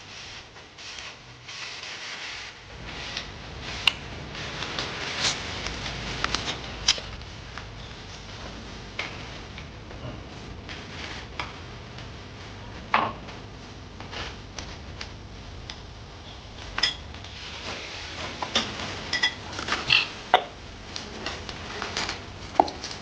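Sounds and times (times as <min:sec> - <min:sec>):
utensils clinking on bowls and pots: 0:16.8 - 0:17.1, 0:18.4 - 0:20.5.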